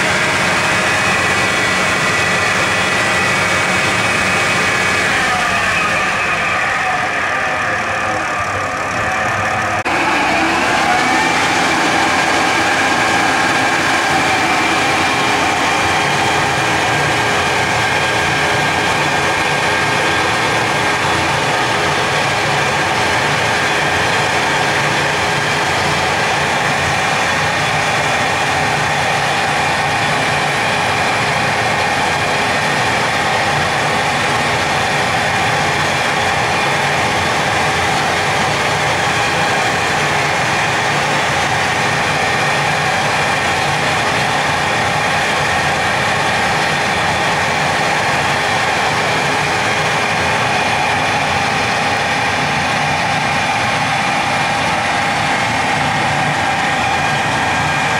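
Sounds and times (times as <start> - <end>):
machine humming: 0.0 - 57.9
steady whining tones: 0.0 - 57.9.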